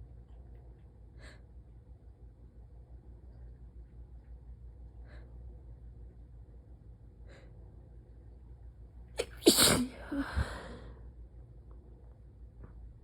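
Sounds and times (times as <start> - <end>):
woman sneezing: 9.2 - 10.6.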